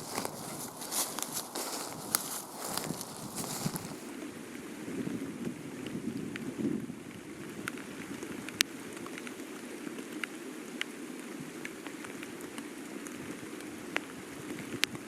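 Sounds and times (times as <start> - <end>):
water drops hitting leaves: 0.0 - 4.1.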